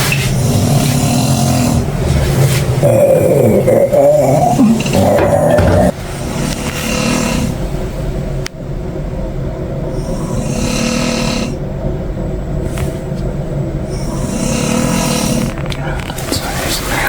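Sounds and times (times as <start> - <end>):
person snoring heavily: 0.4 - 1.9, 2.8 - 7.6, 10.0 - 11.6, 13.9 - 15.6.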